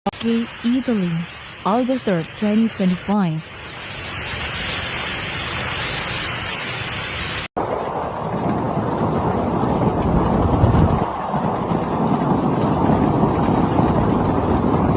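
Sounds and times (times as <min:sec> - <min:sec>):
heavy rain hissing: 0:00.1 - 0:07.5
rumbling storm rush: 0:00.1 - 0:14.9.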